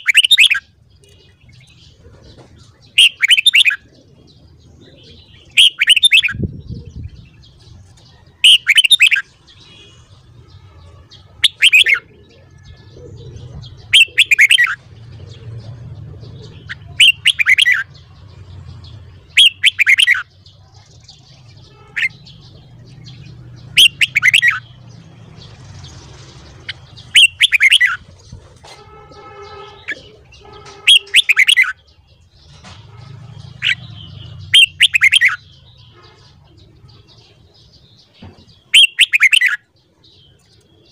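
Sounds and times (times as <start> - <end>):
bulbul singing whistled phrases: 0.0 - 1.2, 2.9 - 3.8, 5.4 - 7.2, 13.6 - 14.8, 16.4 - 18.0, 19.4 - 20.4, 21.0 - 24.8, 26.6 - 28.0, 29.8 - 31.8, 33.6 - 37.3, 38.6 - 39.7.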